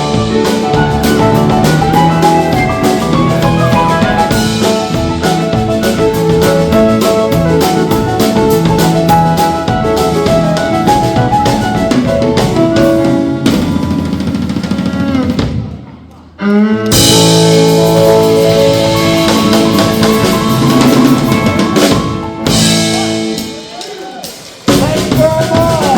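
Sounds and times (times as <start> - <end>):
roots band playing: 0.0 - 15.9, 16.9 - 25.9
drum kit playing loudly: 0.0 - 16.1, 16.9 - 25.9.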